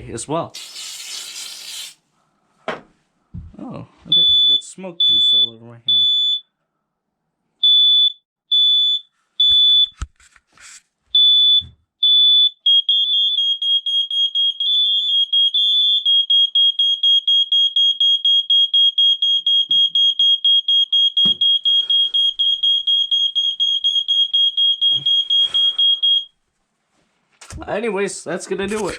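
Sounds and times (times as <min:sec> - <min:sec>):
smoke alarm high beeps: 0:04.1 - 0:06.5, 0:07.6 - 0:10.0, 0:11.2 - 0:26.3
rapidly pulsing alarm tone: 0:12.6 - 0:26.3.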